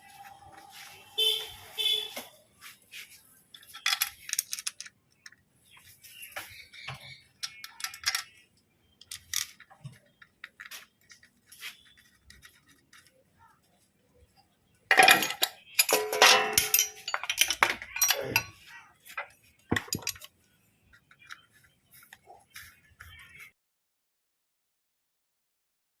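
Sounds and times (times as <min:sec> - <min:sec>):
metal tools clinking: 0:03.5 - 0:04.9, 0:07.4 - 0:08.4, 0:14.9 - 0:20.3.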